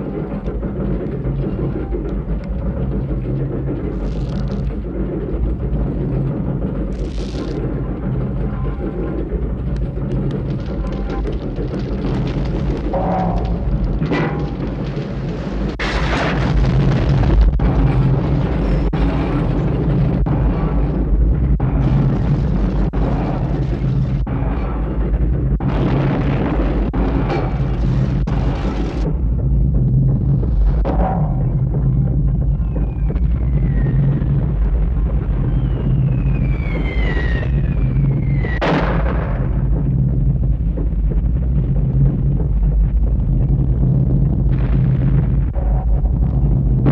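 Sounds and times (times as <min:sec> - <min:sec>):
loud continuous rumble: 0:00.0 - 0:46.9
explosion-like crash: 0:12.0 - 0:19.5, 0:36.4 - 0:40.6.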